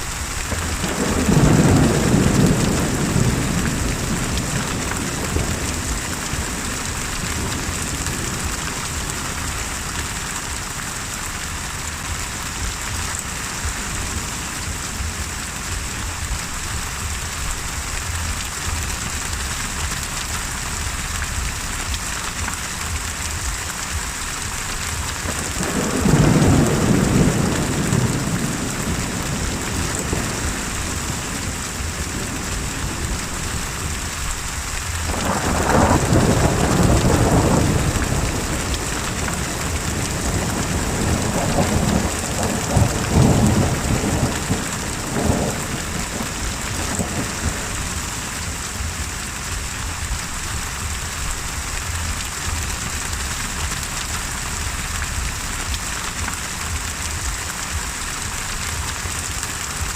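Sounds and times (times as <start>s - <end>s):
heavy rain: 0.0s - 59.9s
rolling thunder: 0.3s - 9.4s, 25.1s - 56.9s.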